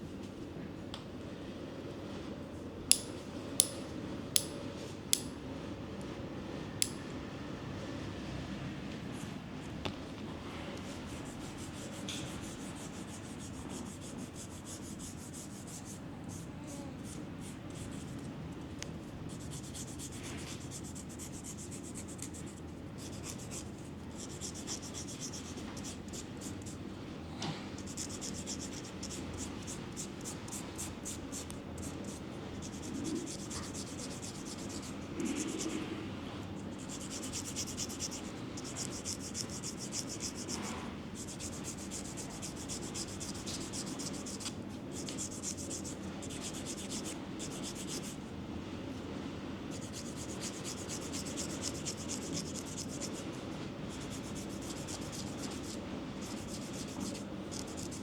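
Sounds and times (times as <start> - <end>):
close-up scraping strokes: 27.9 - 48.2, 49.7 - 58.0.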